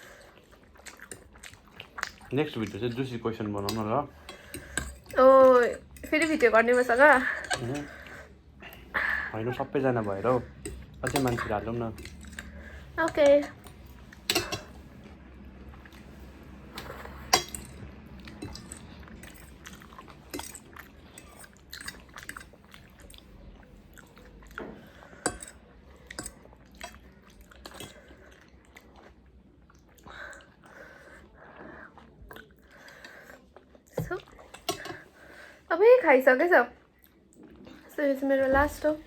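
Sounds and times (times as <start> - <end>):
person chewing food: 0.0 - 35.4
utensils clicking on dish: 2.0 - 8.0, 9.8 - 14.8, 16.7 - 22.6, 25.2 - 27.0, 34.6 - 35.0.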